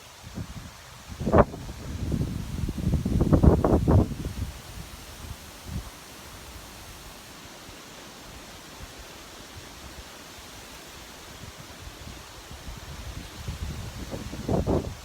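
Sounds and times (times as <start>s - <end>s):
wind rustling leaves: 0.0s - 15.0s
wind buffeting microphone: 0.2s - 5.9s, 11.8s - 15.0s.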